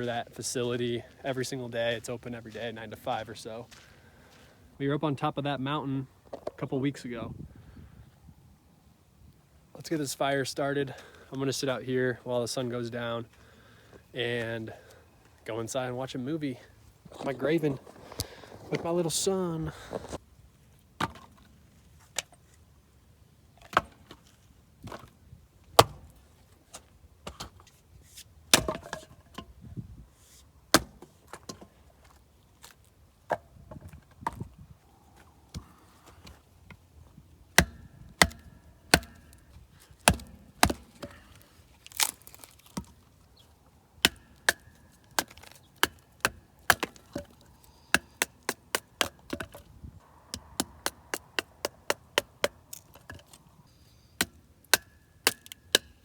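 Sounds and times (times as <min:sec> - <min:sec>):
firewood being chopped: 0:25.8 - 0:26.1, 0:28.5 - 0:29.1, 0:30.7 - 0:31.6, 0:37.6 - 0:43.0, 0:44.0 - 0:49.6, 0:50.3 - 0:53.4, 0:54.2 - 0:56.0.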